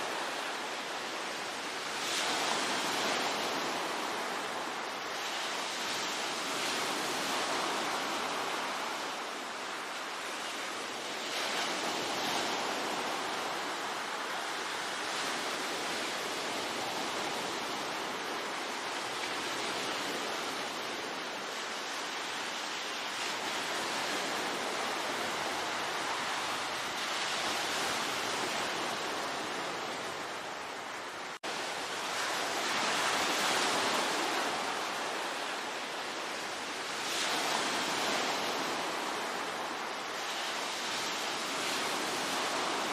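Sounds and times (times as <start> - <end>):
ocean waves washing on shore: 0.0 - 42.9.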